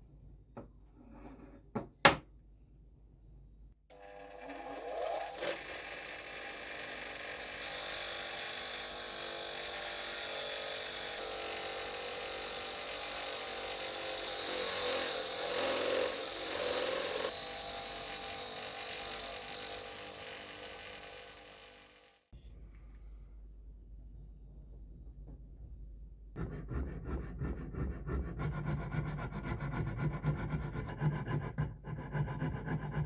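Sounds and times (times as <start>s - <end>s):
power tool abrading steel: 3.9s - 22.3s.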